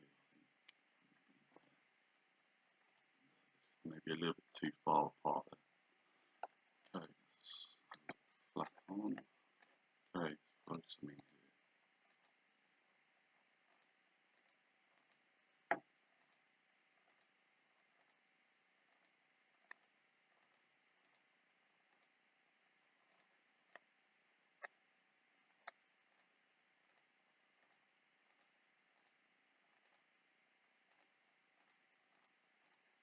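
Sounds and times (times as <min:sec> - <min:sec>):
faint regular ticking: 0:00.5 - 0:04.8, 0:06.2 - 0:33.0
computer mouse clicking: 0:02.8 - 0:03.1, 0:12.0 - 0:12.4, 0:13.6 - 0:18.2, 0:18.8 - 0:22.2, 0:23.0 - 0:24.8, 0:25.4 - 0:30.2, 0:30.8 - 0:33.0
faint hiss: 0:07.0 - 0:09.2.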